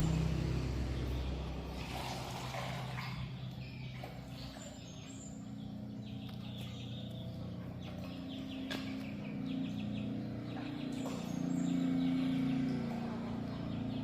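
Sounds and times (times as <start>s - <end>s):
birds chirping faintly: 0.0s - 14.0s
low steady hum: 0.0s - 14.0s.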